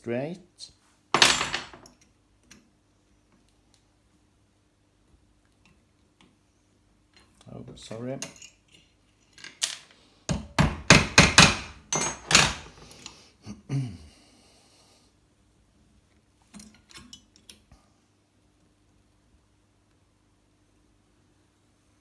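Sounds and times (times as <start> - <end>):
metal clanks and knocks: 10.3 - 12.8.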